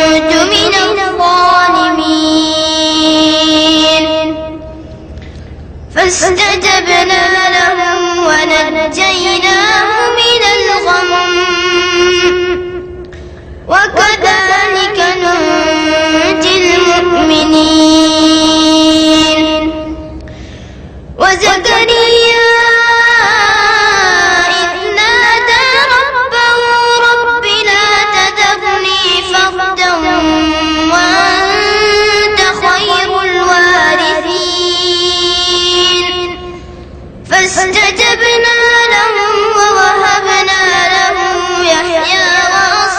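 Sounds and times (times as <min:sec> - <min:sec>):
child reciting melodic chant: 0:00.0 - 0:04.8, 0:05.9 - 0:13.0, 0:13.7 - 0:20.2, 0:21.2 - 0:36.6, 0:37.2 - 0:42.9
child breathing: 0:13.1 - 0:13.7, 0:20.2 - 0:21.1.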